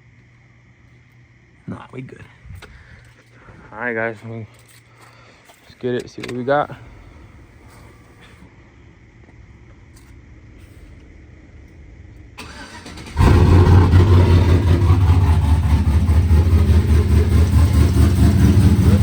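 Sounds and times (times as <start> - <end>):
engine starter cranking: 12.4 - 19.0
truck engine idling: 12.4 - 19.0.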